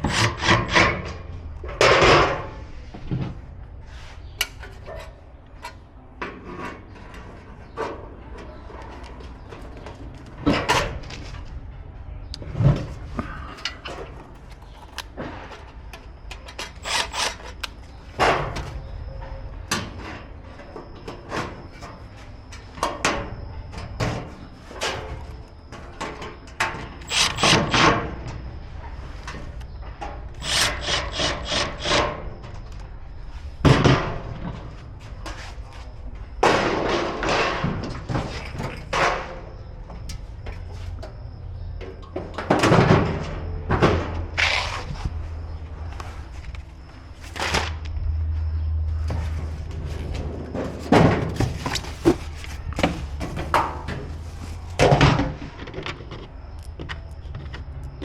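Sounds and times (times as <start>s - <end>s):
metal parts knocking and clattering: 12.6s - 18.8s, 25.8s - 28.1s, 30.0s - 32.2s.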